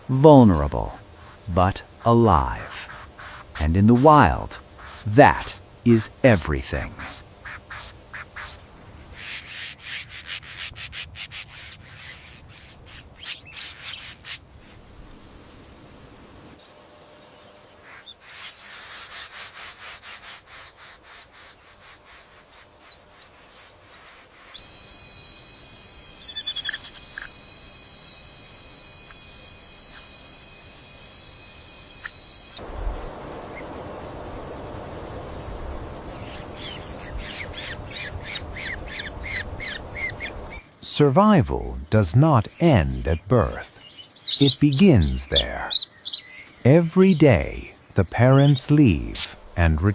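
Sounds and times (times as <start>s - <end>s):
rapid high chirping: 0.0s - 14.5s, 17.8s - 32.6s, 36.2s - 40.7s
high-pitched insect-like drone: 2.6s - 5.6s, 24.5s - 32.6s.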